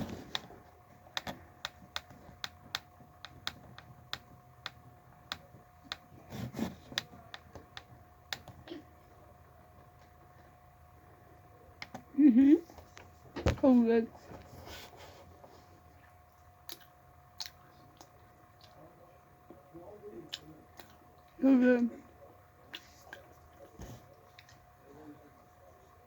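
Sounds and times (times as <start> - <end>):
chewing: 16.3 - 18.8, 22.7 - 24.6
mouth clicks and lip smacks: 16.7 - 18.8.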